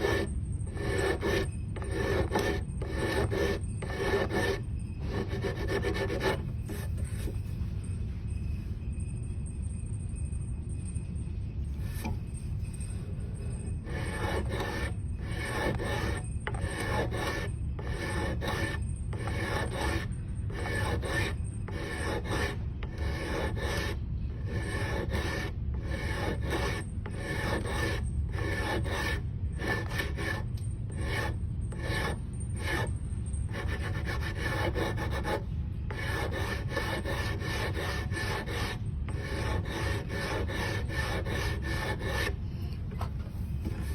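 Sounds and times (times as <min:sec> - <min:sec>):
rhythmic abrasive rasping strokes: 0:36.0 - 0:42.3.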